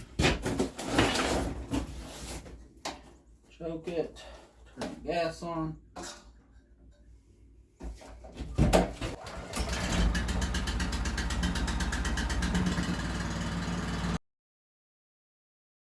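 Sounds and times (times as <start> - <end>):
small gasoline engine running: 9.2 - 14.2.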